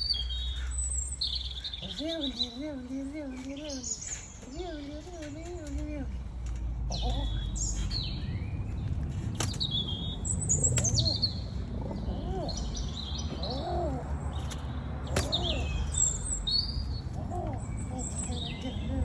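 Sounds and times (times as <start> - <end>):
songbirds chirping: 0.0 - 19.0
bird cooing: 1.8 - 6.1, 6.9 - 7.6, 10.6 - 14.5, 15.1 - 16.0, 17.1 - 19.0.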